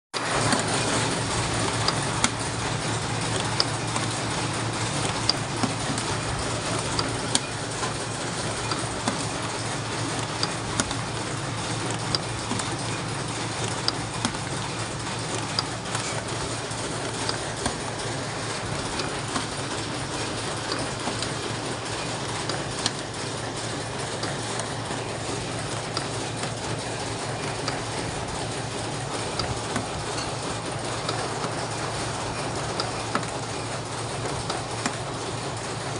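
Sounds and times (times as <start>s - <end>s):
sharp machine clicks: 0.2s - 35.9s
spring coiling machine hum: 0.2s - 35.9s.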